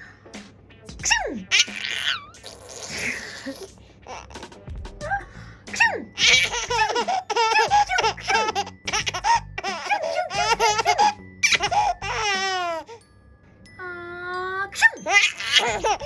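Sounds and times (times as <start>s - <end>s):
baby laughing: 1.0s - 4.5s, 5.8s - 13.0s, 14.7s - 16.0s.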